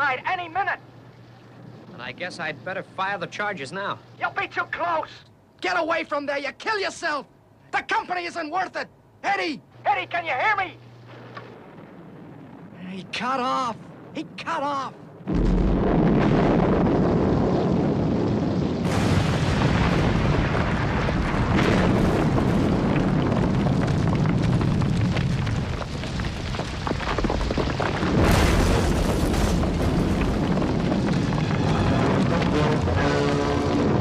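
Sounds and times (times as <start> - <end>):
demolition charges blasting: 11.1 - 34.0
rock crashing down: 15.3 - 34.0.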